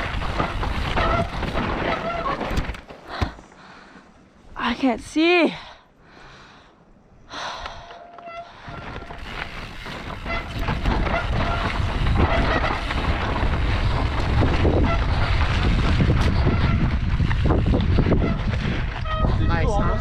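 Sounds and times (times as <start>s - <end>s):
bike tyres rattling on rocks: 0.0s - 3.5s, 8.2s - 20.0s
wind buffeting microphone: 8.6s - 20.0s.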